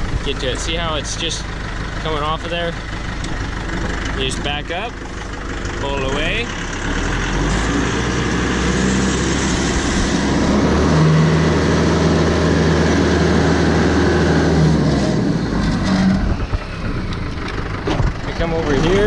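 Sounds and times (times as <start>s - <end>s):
tractor engine running: 0.0s - 19.0s.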